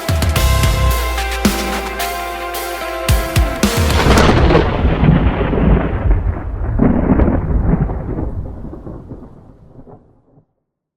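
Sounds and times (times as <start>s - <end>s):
thunderclap and rolling rumble: 3.8s - 10.4s.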